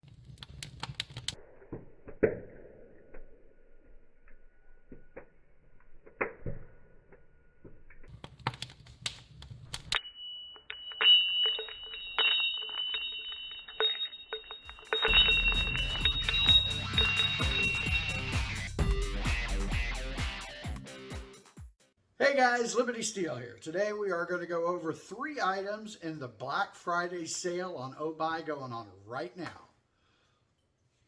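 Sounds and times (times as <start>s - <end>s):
high-pitched ringing tone: 10.0s - 18.7s.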